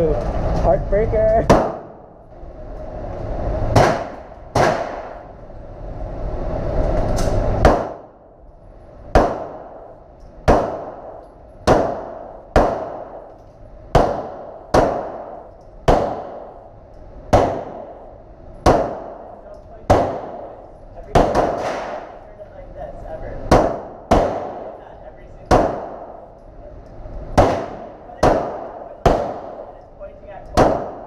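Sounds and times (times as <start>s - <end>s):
pistol shots echoing: 1.5s - 2.1s, 3.8s - 5.3s, 9.1s - 13.3s, 13.9s - 16.6s, 17.3s - 18.0s, 18.6s - 22.2s, 23.5s - 24.8s, 25.4s - 26.3s, 27.4s - 29.7s, 30.5s - 31.0s.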